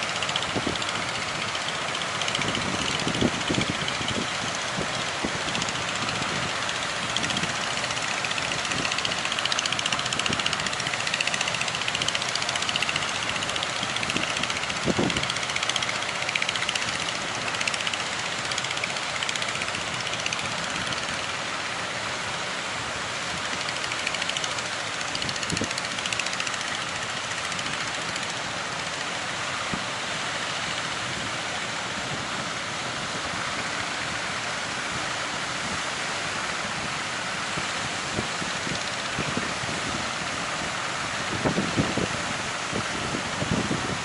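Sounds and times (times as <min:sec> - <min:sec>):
sea waves rushing: 0:00.0 - 0:44.0
strong wind: 0:30.9 - 0:44.0.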